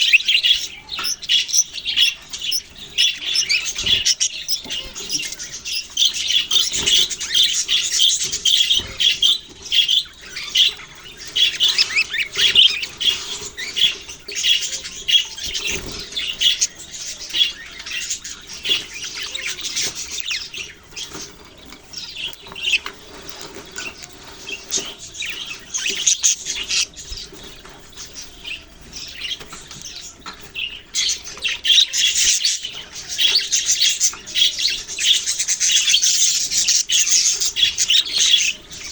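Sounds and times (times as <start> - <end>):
budgerigars chirping: 0.0 - 38.9.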